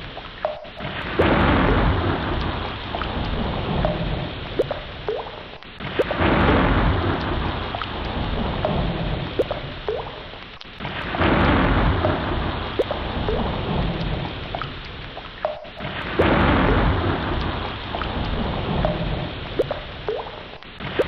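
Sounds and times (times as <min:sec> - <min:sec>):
raindrops ticking: 0:00.0 - 0:21.0
heavy rain falling: 0:00.8 - 0:14.8, 0:15.8 - 0:21.0
deep rolling thunder: 0:01.2 - 0:04.2, 0:06.1 - 0:09.3, 0:11.1 - 0:14.2, 0:16.2 - 0:19.3.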